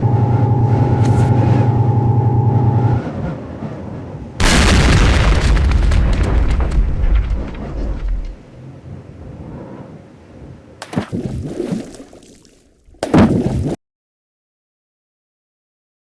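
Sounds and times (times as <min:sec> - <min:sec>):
steady single-tone hum: 0:00.0 - 0:05.2
explosion boom with rumble: 0:04.4 - 0:08.4
crackling: 0:04.4 - 0:08.6.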